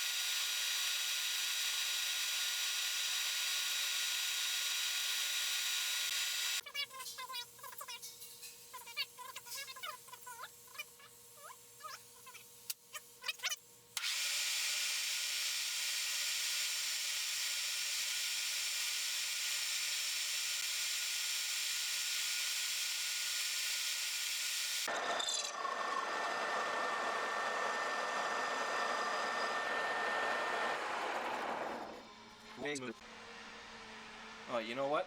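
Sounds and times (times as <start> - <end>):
power tool grinding metal: 0.0 - 6.6, 15.8 - 32.8.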